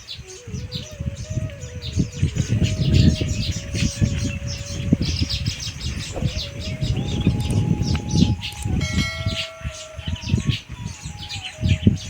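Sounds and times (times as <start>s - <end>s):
small birds chirping: 0.0s - 12.0s
wind buffeting microphone: 0.0s - 12.0s
faint steady tone: 7.4s - 11.0s.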